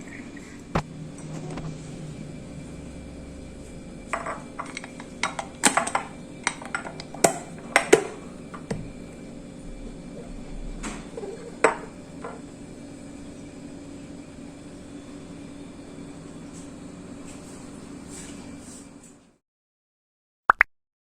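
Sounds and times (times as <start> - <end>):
steady low hum: 0.0 - 18.8
kitchenware clinking: 4.1 - 8.8, 11.2 - 12.5.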